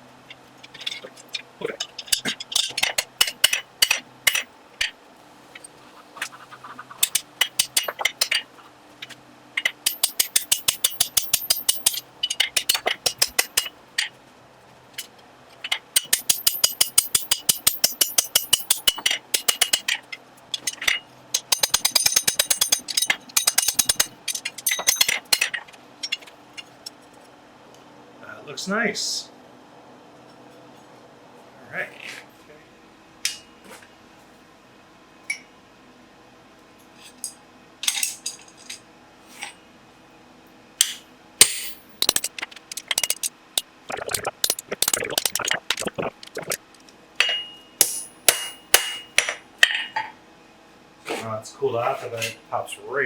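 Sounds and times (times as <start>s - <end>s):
hammer striking iron on anvil: 9.9s - 12.0s, 12.6s - 13.7s, 16.0s - 19.8s, 21.4s - 25.5s, 40.8s - 43.2s, 47.2s - 49.4s.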